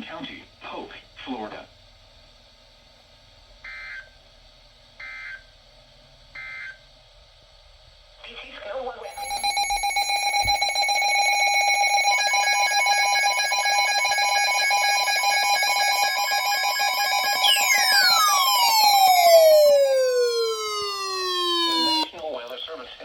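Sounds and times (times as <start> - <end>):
steady high alarm tones: 9.0 - 22.2.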